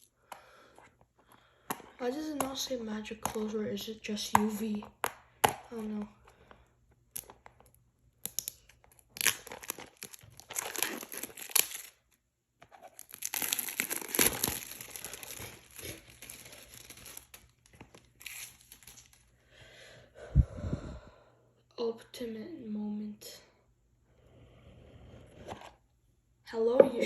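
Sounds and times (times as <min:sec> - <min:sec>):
packaging crinkling and tearing: 0:07.1 - 0:19.3.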